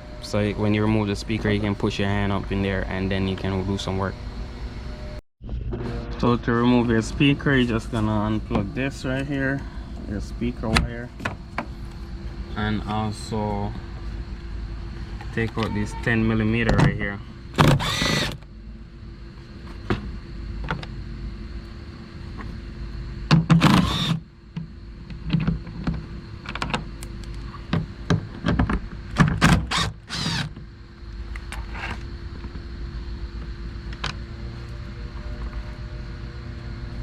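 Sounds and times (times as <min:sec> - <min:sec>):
cordless drill whirring: 0:17.6 - 0:18.4, 0:23.6 - 0:24.2, 0:29.6 - 0:30.6.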